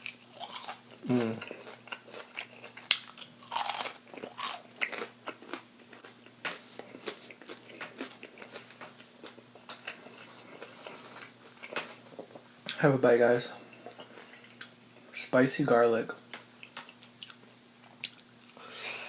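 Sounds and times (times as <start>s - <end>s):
crunching crispy food: 0.0s - 11.8s
chewing: 0.0s - 12.4s, 16.6s - 18.7s.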